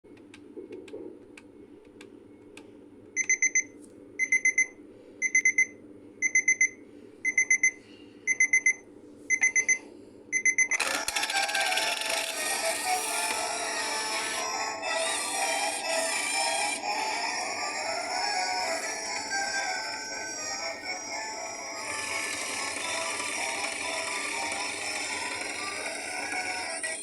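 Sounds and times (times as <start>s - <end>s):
alarm clock beeping: 4.2s - 6.7s, 7.3s - 27.0s
loud music: 12.2s - 27.0s.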